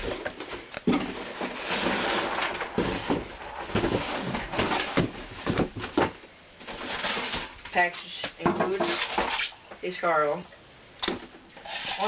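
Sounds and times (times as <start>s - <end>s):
box contents knocking and clicking: 0.0s - 7.5s
rustling: 0.0s - 8.2s.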